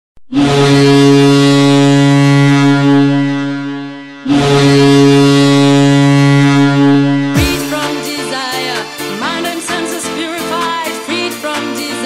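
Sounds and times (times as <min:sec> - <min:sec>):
deep horn blasts: 0:00.3 - 0:08.1.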